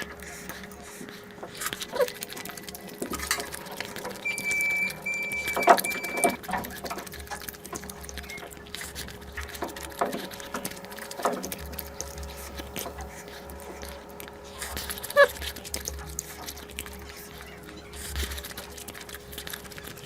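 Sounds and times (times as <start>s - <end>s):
wet chewing and mouth smacking: 0.0s - 20.0s
thin high steady tone: 3.3s - 6.4s.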